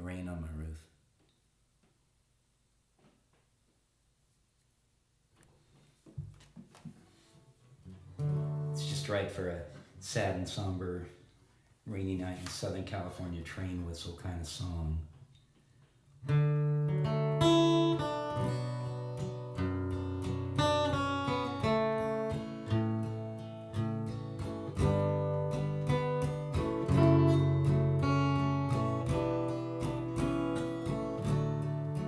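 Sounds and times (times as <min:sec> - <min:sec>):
acoustic guitar strumming: 0:07.8 - 0:09.6, 0:16.3 - 0:32.0.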